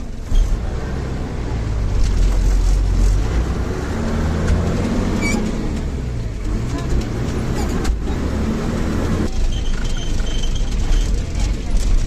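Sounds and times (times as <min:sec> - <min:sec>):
bus engine running: 0:00.0 - 0:12.0
road rumble: 0:00.0 - 0:12.0.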